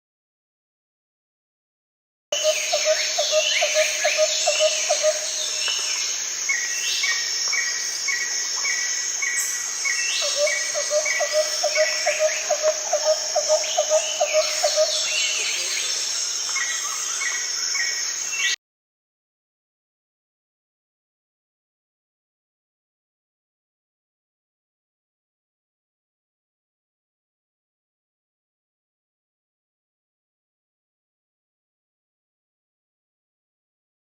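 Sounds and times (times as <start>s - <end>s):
insects buzzing: 2.4s - 18.6s.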